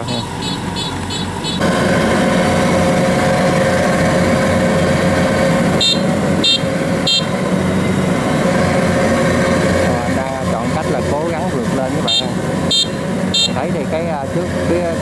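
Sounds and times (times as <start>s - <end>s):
combine harvester engine under load: 0.0s - 15.0s.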